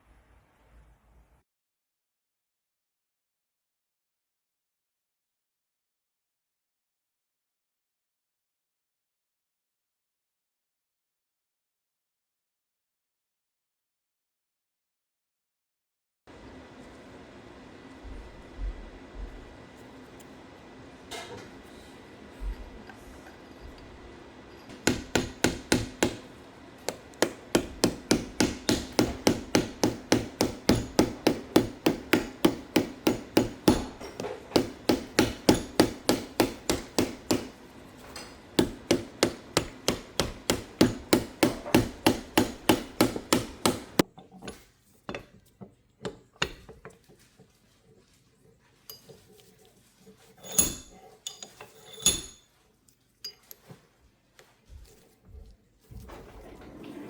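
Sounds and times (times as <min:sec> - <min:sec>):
rapid hammer blows: 0:24.7 - 0:37.6, 0:38.6 - 0:44.0.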